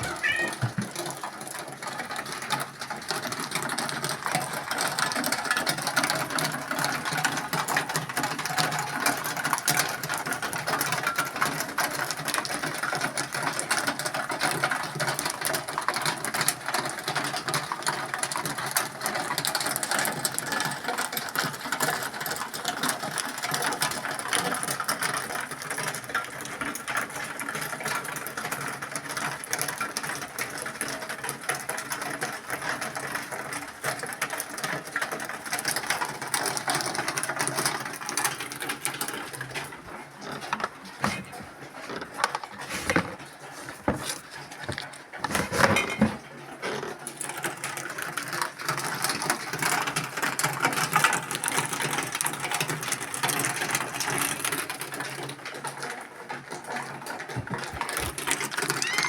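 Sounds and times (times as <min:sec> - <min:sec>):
rapid mechanical clicking and rattling: 0:00.0 - 0:58.9.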